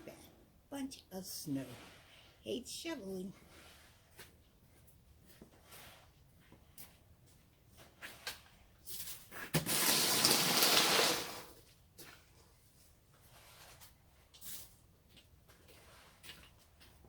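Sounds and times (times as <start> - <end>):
snow shovel scraping icy snow: 9.6 - 11.5.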